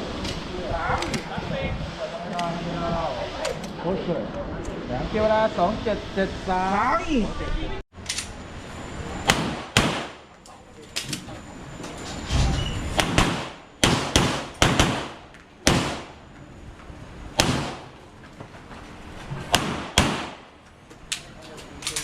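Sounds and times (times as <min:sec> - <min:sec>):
handgun shots with echo: 0:19.5 - 0:20.4.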